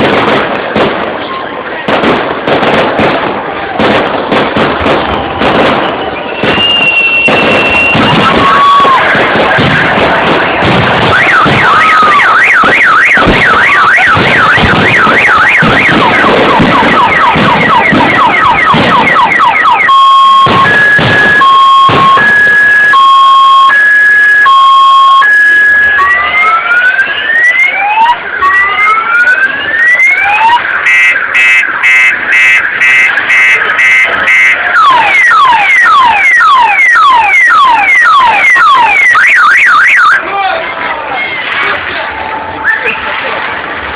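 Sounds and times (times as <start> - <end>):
noisy background: 0.0 - 43.9
car alarm: 5.0 - 27.7, 28.5 - 40.2.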